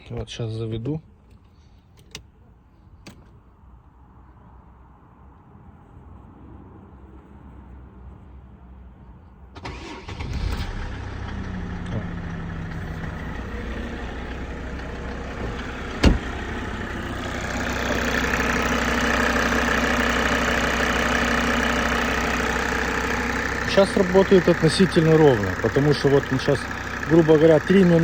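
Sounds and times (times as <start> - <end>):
diesel engine starting and idling: 9.6 - 28.0.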